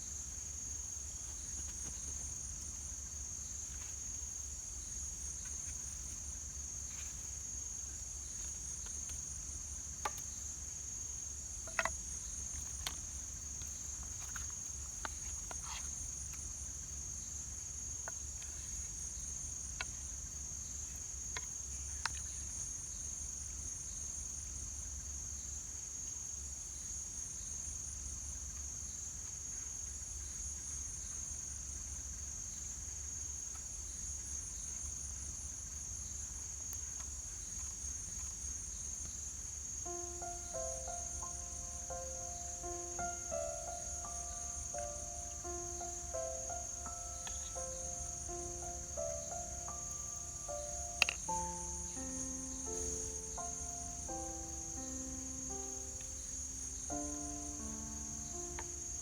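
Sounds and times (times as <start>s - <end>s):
crickets trilling: 0.0s - 59.0s
sharp clicks: 50.5s - 51.6s.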